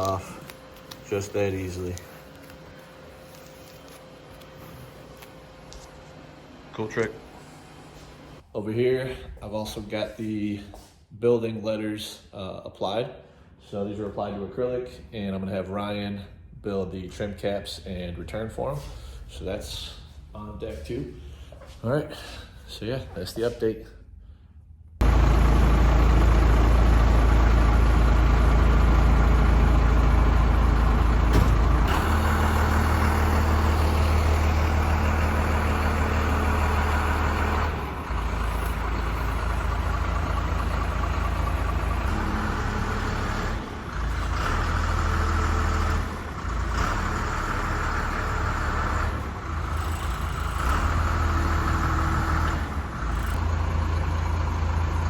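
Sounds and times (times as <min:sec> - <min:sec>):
truck engine rumbling: 0:00.0 - 0:08.4, 0:25.0 - 0:55.0.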